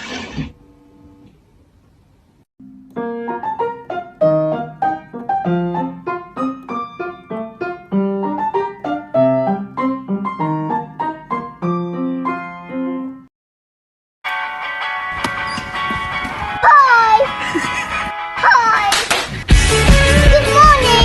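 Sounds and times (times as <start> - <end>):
piano playing quick melody: 2.6 - 13.2.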